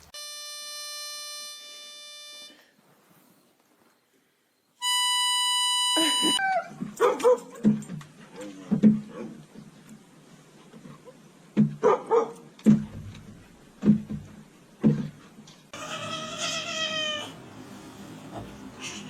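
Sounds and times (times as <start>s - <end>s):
dog yowling and barking: 6.3s - 7.6s.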